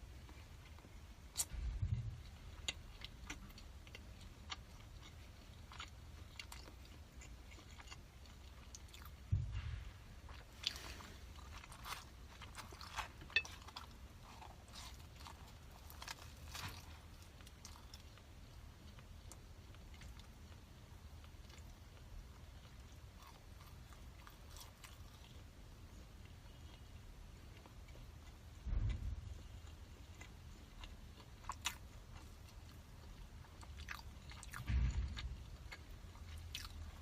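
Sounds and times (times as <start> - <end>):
chewing crunchy food: 0.1 - 37.0
low thuds: 1.4 - 3.6, 8.9 - 12.9, 28.5 - 30.4, 34.2 - 37.0.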